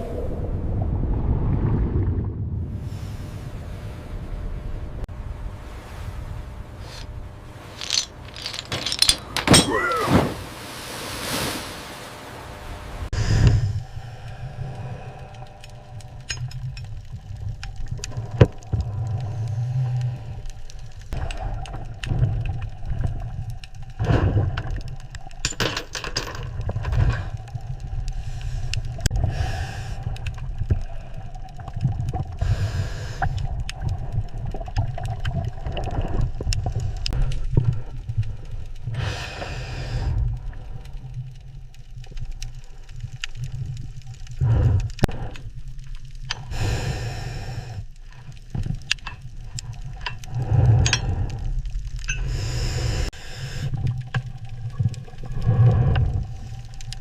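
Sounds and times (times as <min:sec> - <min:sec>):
steady low rumble: 0:00.0 - 0:09.7, 0:12.2 - 0:25.6.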